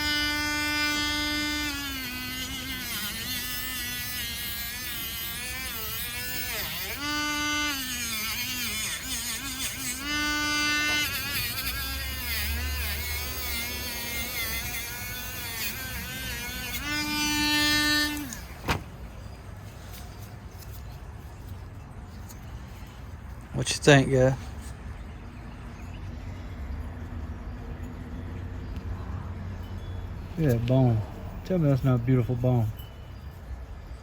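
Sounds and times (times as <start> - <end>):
electric tool motor whining: 0.0 - 19.2.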